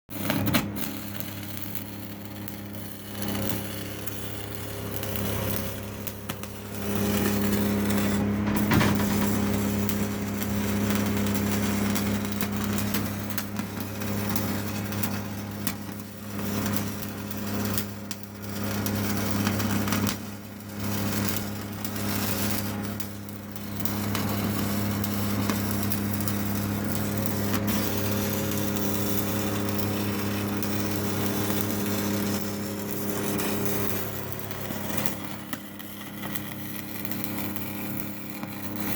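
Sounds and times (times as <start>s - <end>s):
welding arc crackling and hissing: 0.1s - 38.9s
steady low hum: 3.1s - 12.9s.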